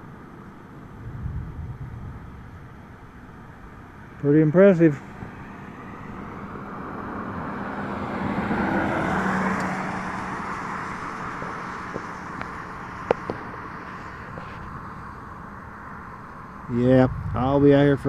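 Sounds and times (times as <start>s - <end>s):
vehicle driving past: 0.9s - 18.0s.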